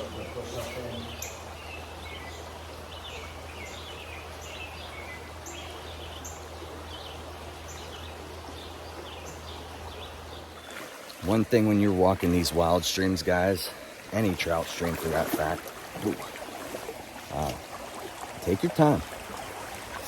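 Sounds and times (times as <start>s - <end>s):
songbird calling: 0.0s - 11.2s
stream water rushing: 0.0s - 20.0s.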